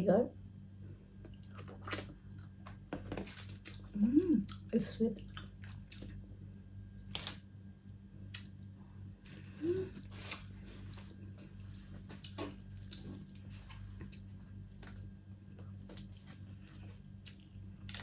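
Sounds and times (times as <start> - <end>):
steady low hum: 0.0 - 18.0
person chewing wetly: 1.2 - 6.2, 9.5 - 18.0.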